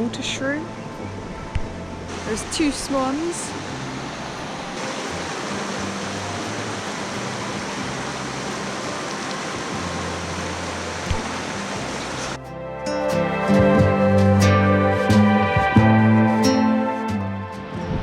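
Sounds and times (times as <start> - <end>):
music with plucked notes: 0.0 - 18.0
steady rushing noise: 0.8 - 12.4.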